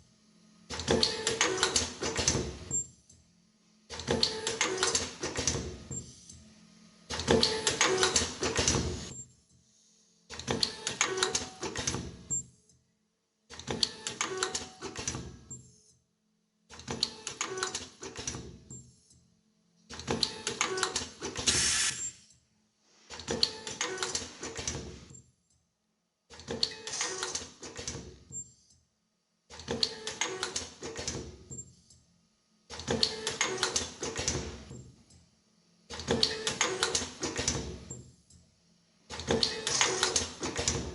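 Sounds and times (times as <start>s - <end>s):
machine clattering and clicking: 0.7s - 2.8s, 3.9s - 6.4s, 7.1s - 9.2s, 10.3s - 12.4s, 13.5s - 15.6s, 16.7s - 18.8s, 19.9s - 21.5s, 23.1s - 25.1s, 26.3s - 28.4s, 29.5s - 31.7s, 32.7s - 35.2s, 35.9s - 38.4s, 39.1s - 40.9s.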